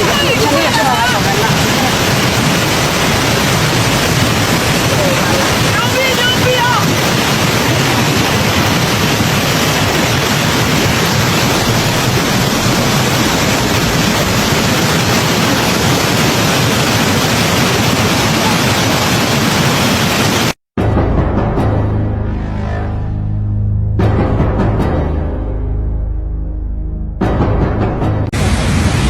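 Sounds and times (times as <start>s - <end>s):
water rushing: 0.0s - 20.6s.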